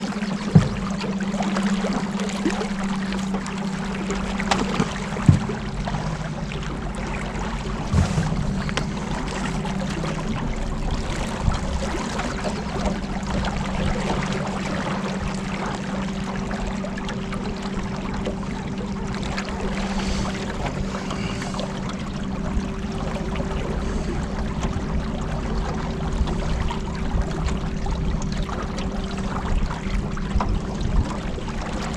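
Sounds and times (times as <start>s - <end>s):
boat motor humming: 0.0s - 31.9s
water splashing along hull: 0.0s - 31.9s
sharp knocks: 0.5s - 1.0s, 4.5s - 5.9s.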